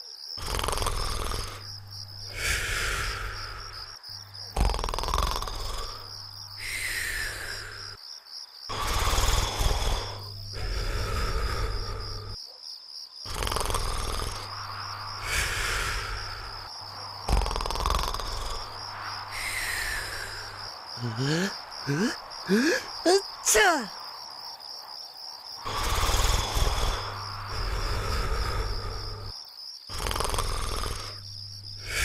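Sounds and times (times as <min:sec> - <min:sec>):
cartoon snoring and whistle: 0:00.4 - 0:01.7, 0:02.3 - 0:03.8, 0:04.5 - 0:08.0, 0:08.7 - 0:12.4, 0:13.3 - 0:22.9, 0:25.6 - 0:29.3, 0:29.9 - 0:32.0.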